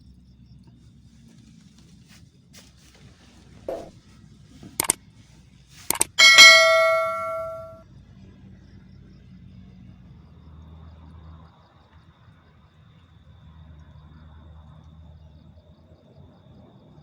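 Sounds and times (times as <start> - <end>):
struck metal ringing: 5.9 - 7.8.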